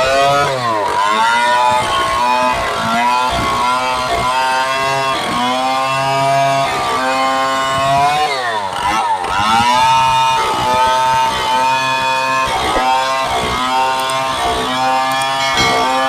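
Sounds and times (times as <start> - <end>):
chainsaw bogging under load: 8.5 - 16.0.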